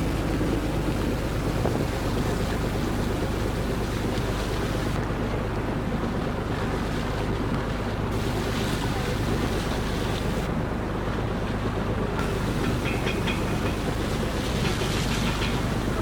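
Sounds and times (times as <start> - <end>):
water washing: 0.0 - 5.0, 5.8 - 16.0
wind noise on microphone: 0.0 - 5.0
boat engine humming: 0.0 - 16.0.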